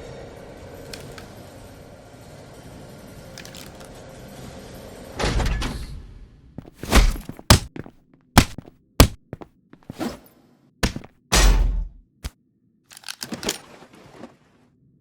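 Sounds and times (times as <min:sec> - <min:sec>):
sharp thunks and whacks: 0:06.6 - 0:10.2, 0:10.8 - 0:12.0.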